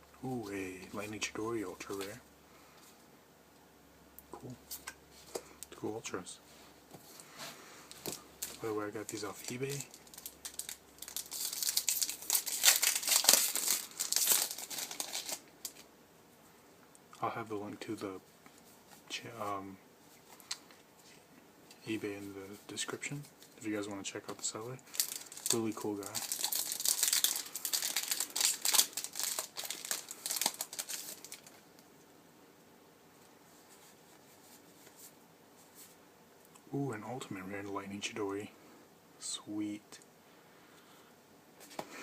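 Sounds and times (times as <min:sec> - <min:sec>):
foil wrapper crinkling: 0:07.9 - 0:15.9, 0:24.3 - 0:31.8.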